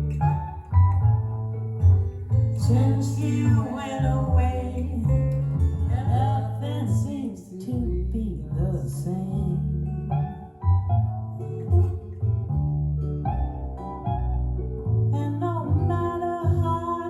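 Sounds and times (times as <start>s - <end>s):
acoustic guitar: 0.0s - 17.0s
bass line: 0.0s - 17.0s
person singing: 2.6s - 9.7s.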